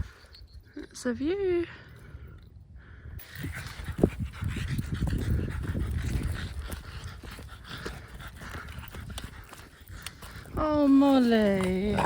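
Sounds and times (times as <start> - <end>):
small dog panting: 3.2 - 12.0.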